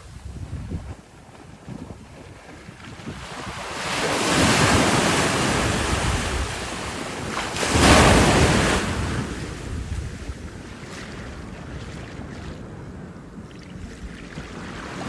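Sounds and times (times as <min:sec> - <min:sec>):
wind buffeting microphone: 0:00.0 - 0:15.0
ocean surf washing onto beach: 0:02.5 - 0:13.4.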